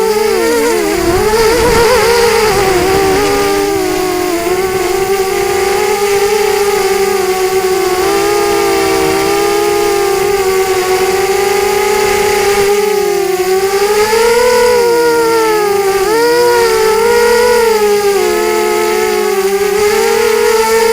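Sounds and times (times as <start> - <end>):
drone propellers whining: 0.0 - 20.9.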